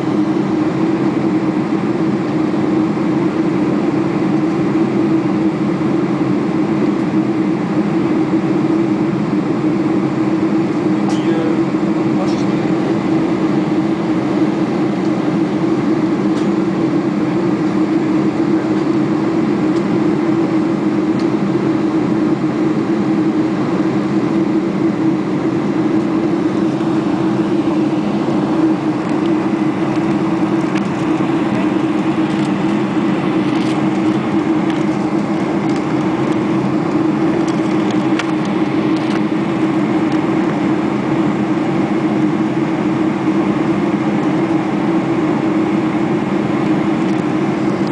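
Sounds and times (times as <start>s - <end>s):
airliner cabin engine drone: 0.0s - 47.9s.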